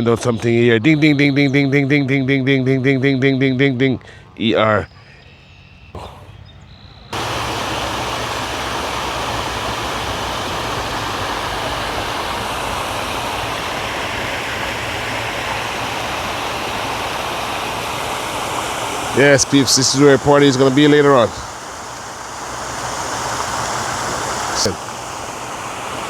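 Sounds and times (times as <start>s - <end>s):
rushing water: 7.2s - 26.0s.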